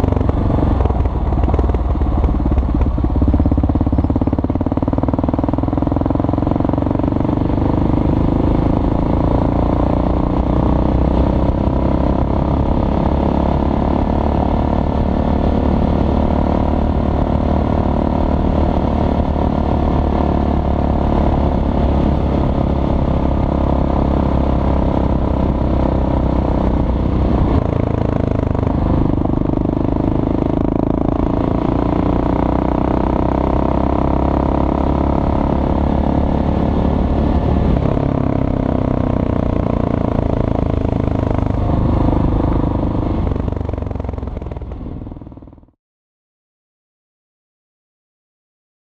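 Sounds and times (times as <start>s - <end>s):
motorcycle engine running: 0.0s - 45.8s.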